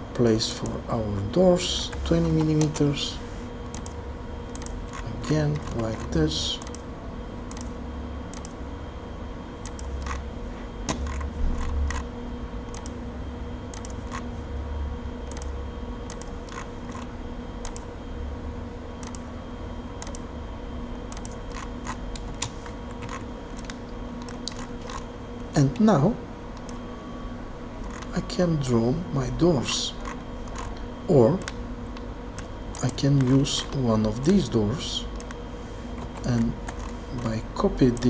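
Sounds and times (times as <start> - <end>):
low steady hum: 0.0 - 38.0
keyboard and mouse clicks: 3.7 - 6.8, 7.5 - 7.7, 8.3 - 8.6, 9.6 - 10.2, 10.9 - 12.1, 12.7 - 13.0, 13.7 - 14.3, 15.3 - 17.9, 19.0 - 19.3, 20.0 - 20.3, 21.1 - 25.0, 26.6 - 26.8, 27.8 - 28.2, 30.0 - 30.8, 35.2 - 35.4.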